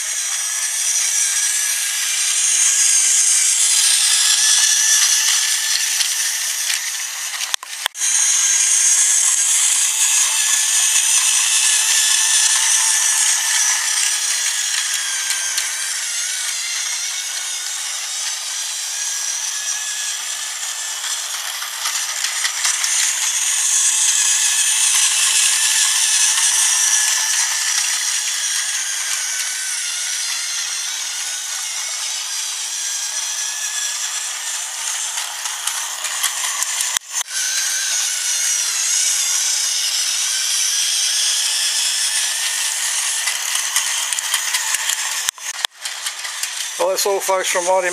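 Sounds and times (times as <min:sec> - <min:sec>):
toy train motor whirring: 0:00.0 - 0:47.9.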